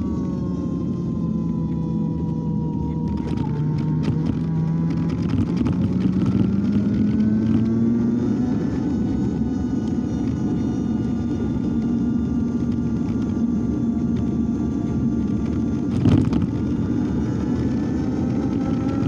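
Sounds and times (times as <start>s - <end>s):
continuous low rush: 0.0s - 19.0s
electric motor whining: 0.0s - 19.0s.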